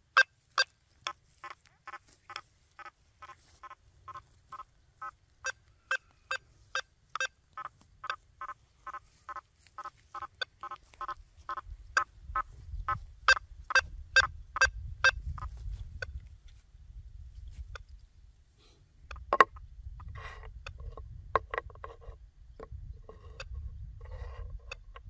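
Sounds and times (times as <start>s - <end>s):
low handling or wind rumble: 10.8s - 25.0s.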